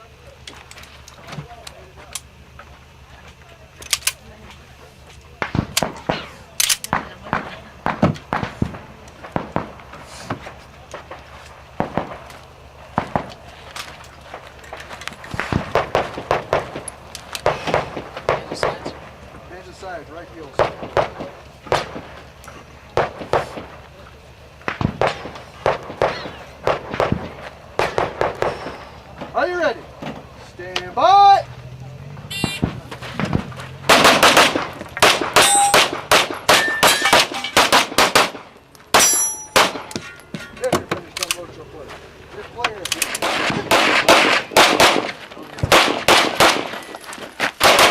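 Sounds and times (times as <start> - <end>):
rapid pistol shots: 5.4 - 9.8, 11.8 - 12.3, 15.3 - 19.0, 20.5 - 22.1, 23.0 - 23.8, 24.7 - 28.8, 33.8 - 40.0, 43.0 - 46.9, 47.6 - 47.9
handgun shots: 33.9 - 40.0, 42.9 - 46.8
steel targets ringing: 34.0 - 37.9, 38.9 - 40.8.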